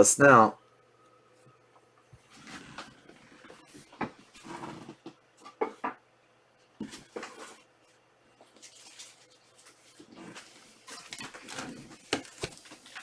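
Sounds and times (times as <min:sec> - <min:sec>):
cards rustling: 0:10.9 - 0:13.0.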